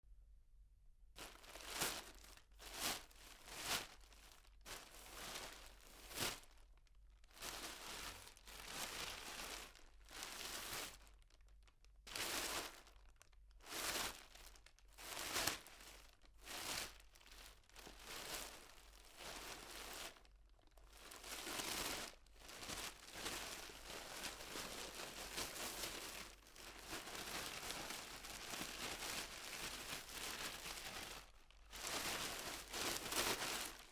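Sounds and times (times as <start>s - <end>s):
plastic bag crinkling: 11.0s - 11.4s, 17.1s - 33.9s.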